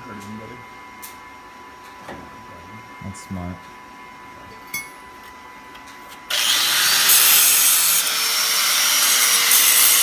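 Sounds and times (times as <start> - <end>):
angle grinder cutting steel: 6.3 - 10.0.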